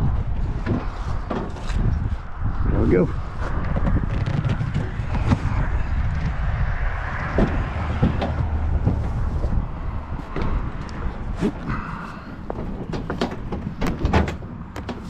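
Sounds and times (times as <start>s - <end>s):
low rumble: 0.0s - 13.9s
knocks and rattles: 3.6s - 11.1s, 12.4s - 15.0s.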